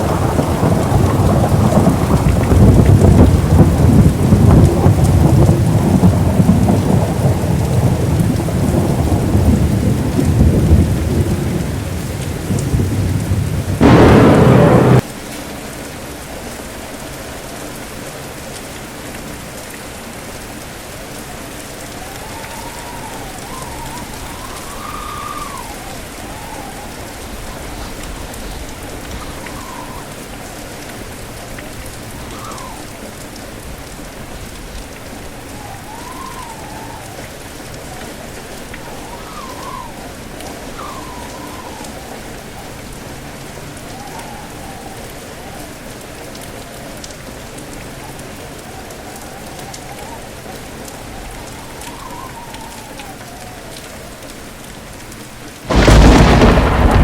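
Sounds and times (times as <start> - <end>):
rolling thunder: 0.0 - 15.0, 55.7 - 57.0
thunder crack: 0.0 - 15.0, 55.7 - 57.0
heavy rain: 0.0 - 57.0
faint wavering whistle: 22.0 - 27.3, 29.2 - 30.2, 32.2 - 32.9, 35.5 - 37.2, 38.8 - 42.4, 43.9 - 45.6, 49.2 - 53.6.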